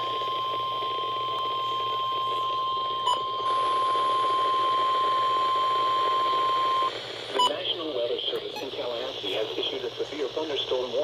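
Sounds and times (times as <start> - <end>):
long steady alarm beep: 0.0 - 7.6.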